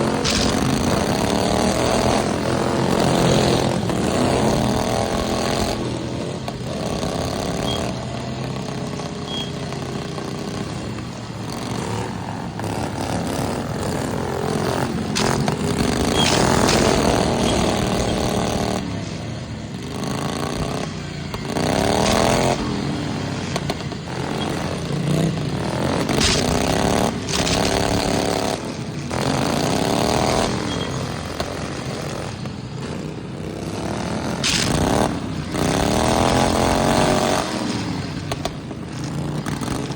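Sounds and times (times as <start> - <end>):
lawnmower engines revving: 0.0 - 39.9
sharp knocks: 26.0 - 28.6.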